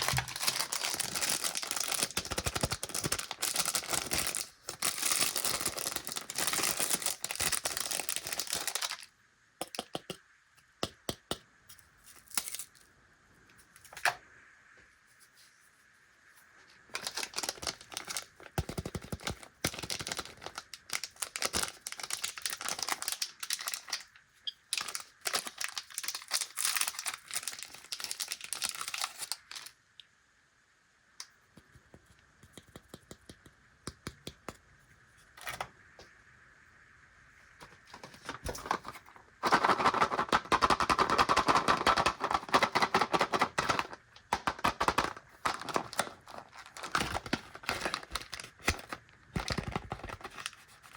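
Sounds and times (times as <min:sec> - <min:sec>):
plastic packaging crinkling: 0:00.0 - 0:09.1, 0:16.9 - 0:29.8, 0:37.7 - 0:50.9.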